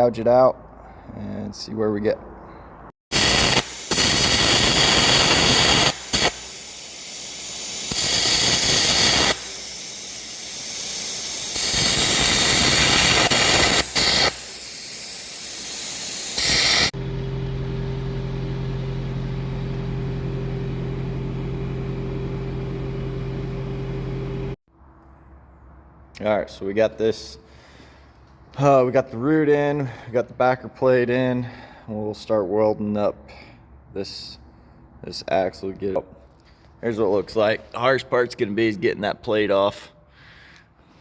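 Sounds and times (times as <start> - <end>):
arc gouging hiss: 3.1 - 17.0
machine hum: 16.1 - 24.6.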